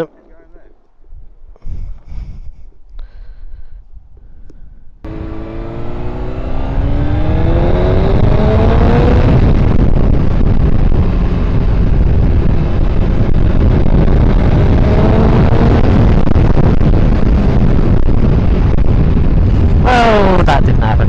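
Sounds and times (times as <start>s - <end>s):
wind buffeting microphone: 0.0s - 21.0s
motorcycle engine running: 5.1s - 20.2s.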